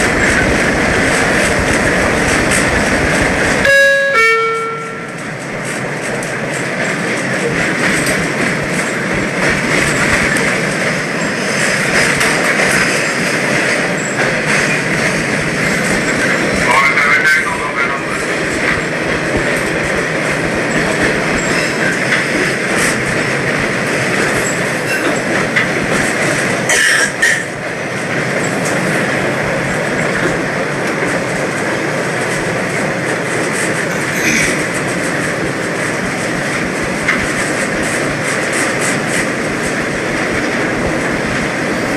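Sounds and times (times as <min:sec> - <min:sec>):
subway train on rails: 0:00.0 - 0:41.9
brief high-pitched sound: 0:03.6 - 0:05.2.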